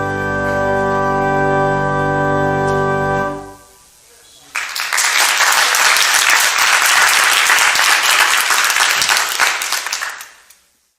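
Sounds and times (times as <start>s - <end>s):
congregation applauding: 4.4s - 10.7s.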